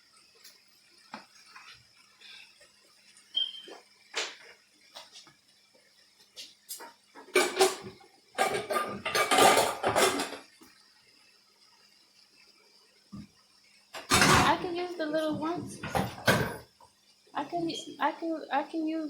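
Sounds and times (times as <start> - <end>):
dishes and metal utensils clinking: 6.8 - 10.4, 14.0 - 14.6, 15.6 - 16.7.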